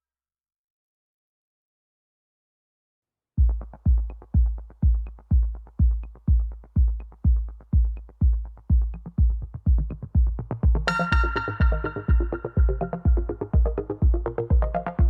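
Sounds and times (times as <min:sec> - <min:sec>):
deep kick drum: 0:03.4 - 0:15.0.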